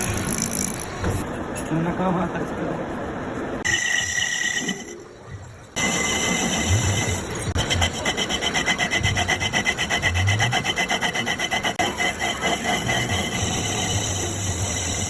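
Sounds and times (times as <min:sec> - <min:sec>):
metal scraping rhythm: 0:03.6 - 0:15.0
steady machine tone: 0:03.6 - 0:15.0.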